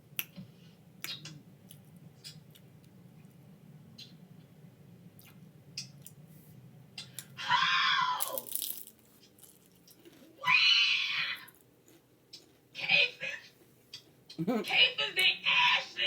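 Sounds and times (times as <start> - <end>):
tortilla chips crunching: 8.2 - 10.7.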